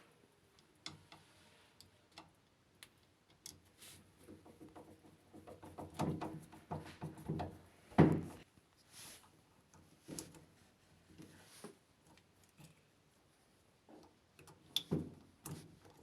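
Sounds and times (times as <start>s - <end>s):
light clicks and knocks: 0.6s - 8.4s.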